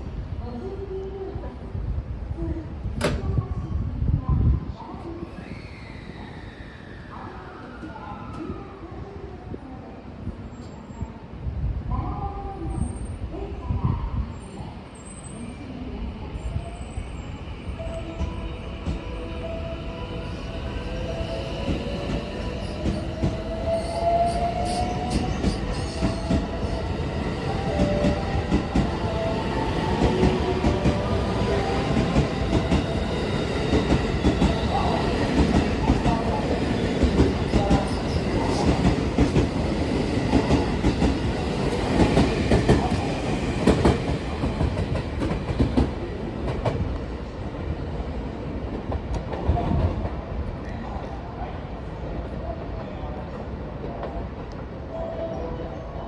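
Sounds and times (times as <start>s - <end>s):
train wheels clattering over rails: 24.5s - 47.0s.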